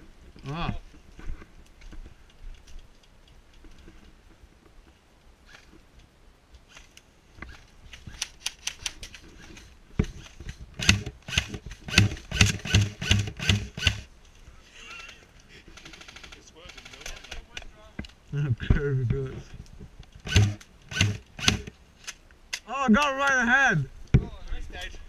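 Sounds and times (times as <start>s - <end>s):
airsoft gun shots: 20.3s - 21.7s.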